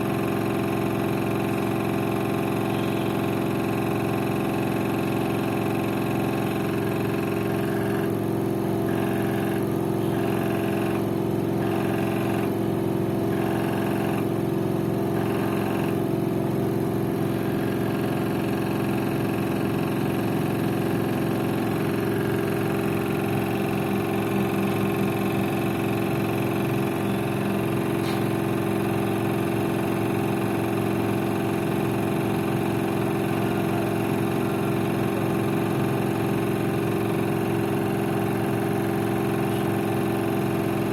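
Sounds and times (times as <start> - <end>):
washing machine spin hum: 0.0 - 40.9.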